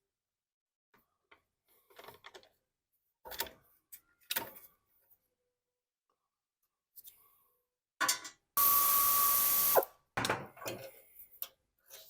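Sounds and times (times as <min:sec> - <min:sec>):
power driver whirring: 0:08.6 - 0:09.9.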